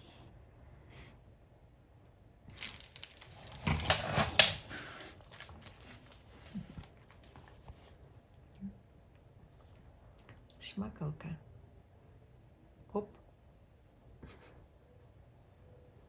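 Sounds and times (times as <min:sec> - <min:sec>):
sharp crackle: 0:02.5 - 0:07.6
toy rustling and crinkling: 0:02.5 - 0:08.3.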